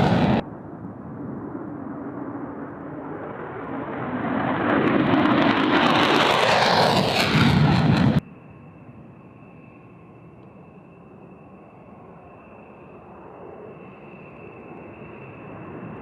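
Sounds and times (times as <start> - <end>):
jet engine rushing: 0.0 - 0.4, 3.1 - 8.2.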